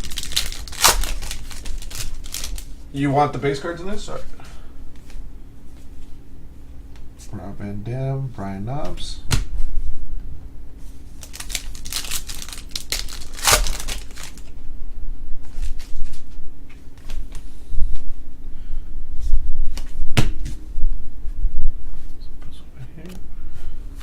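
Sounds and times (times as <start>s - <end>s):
foil wrappers crinkling: 0.0s - 2.8s, 11.1s - 14.5s
faint steady hum: 0.0s - 24.0s.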